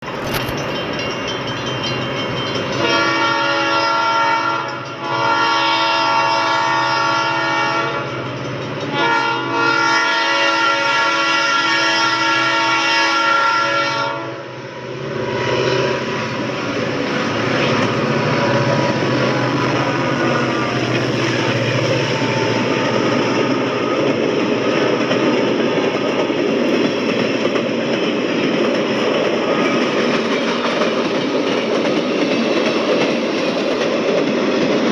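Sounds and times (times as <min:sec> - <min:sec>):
train wheel clatter: 0:00.0 - 0:06.4, 0:07.6 - 0:10.0, 0:15.6 - 0:34.9
train rumble: 0:00.0 - 0:34.9
locomotive air horn blasts: 0:02.8 - 0:08.2, 0:08.9 - 0:14.6.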